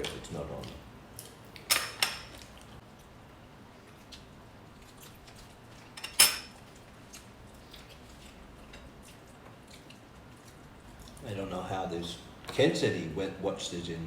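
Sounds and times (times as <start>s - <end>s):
cutlery clatter: 1.7s - 2.4s, 5.9s - 6.6s
cutlery clinking on plates: 5.9s - 6.6s.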